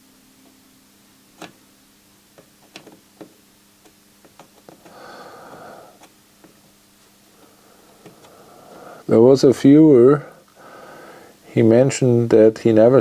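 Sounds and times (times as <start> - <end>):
soldering clicks and taps: 1.4 - 1.6, 2.4 - 4.9.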